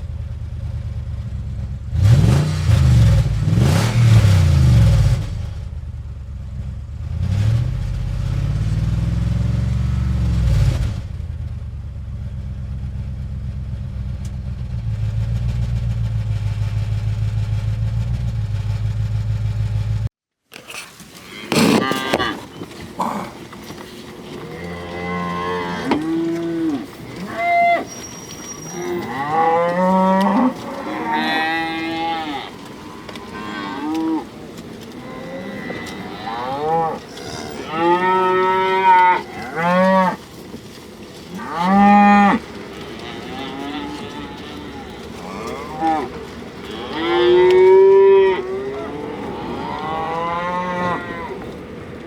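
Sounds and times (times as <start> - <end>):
cattle mooing: 21.3 - 40.3, 41.3 - 51.8.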